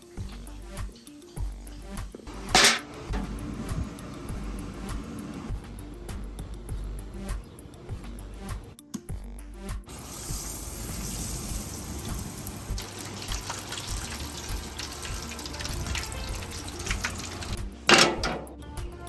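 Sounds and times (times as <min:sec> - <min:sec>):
fish frying in hot oil: 0:00.0 - 0:06.2, 0:09.9 - 0:17.7.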